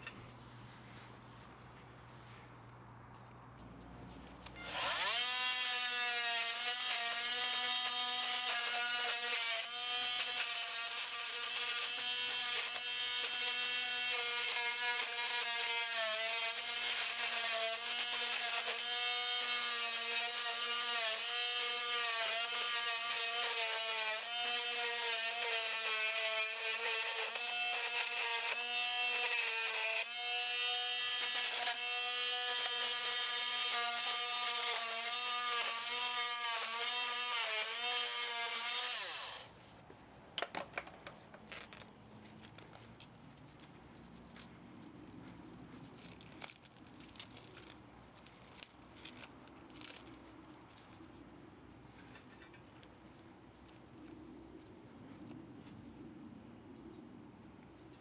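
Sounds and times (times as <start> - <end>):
power tool motor whining: 4.6 - 39.5.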